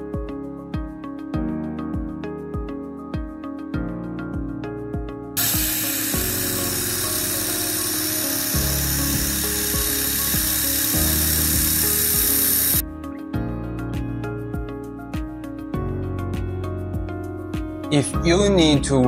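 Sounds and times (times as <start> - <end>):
background music: 0.0 - 19.0
laser hissing on metal: 5.4 - 12.8.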